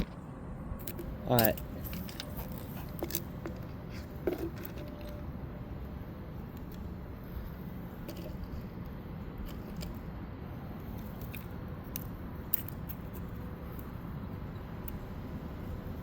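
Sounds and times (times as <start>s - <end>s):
steady low hum: 0.0s - 16.0s
objects being handled with clicks: 0.8s - 5.2s, 10.8s - 13.9s.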